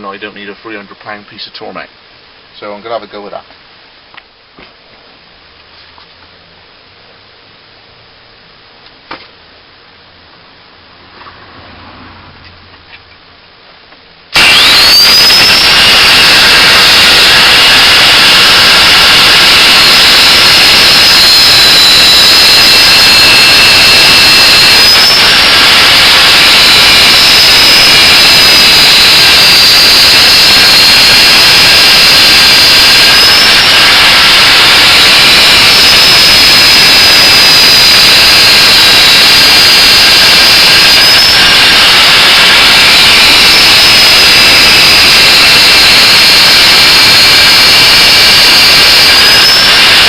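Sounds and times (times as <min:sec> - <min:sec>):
angle grinder grinding steel: 0:14.4 - 0:50.0.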